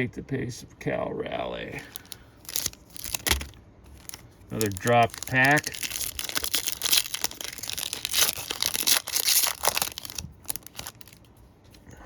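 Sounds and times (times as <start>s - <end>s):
wrapper crinkling and tearing: 1.8s - 11.3s.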